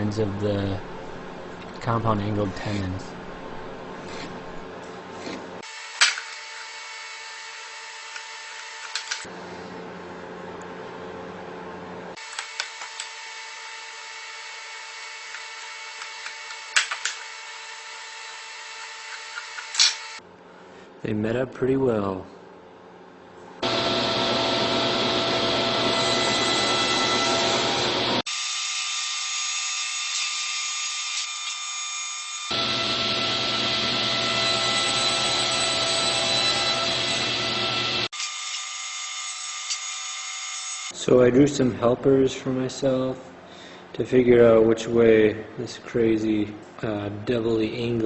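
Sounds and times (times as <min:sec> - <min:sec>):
steady hum with faint whine: 0:00.0 - 0:05.6
electric machine whining: 0:23.6 - 0:28.4, 0:31.2 - 0:38.3.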